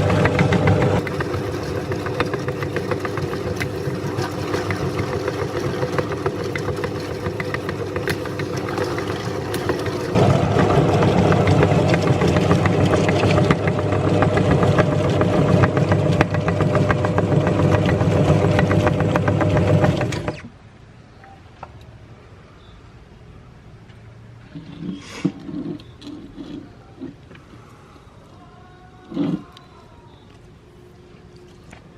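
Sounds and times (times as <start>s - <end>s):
electric meat grinder running: 0.0s - 20.3s.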